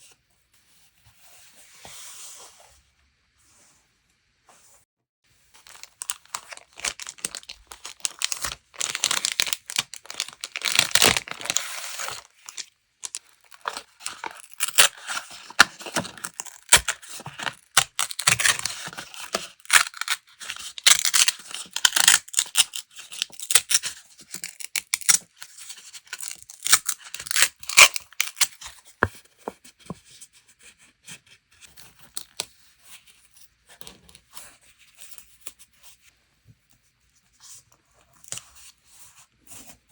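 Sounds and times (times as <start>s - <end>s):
paper crinkling: 5.5s - 22.2s.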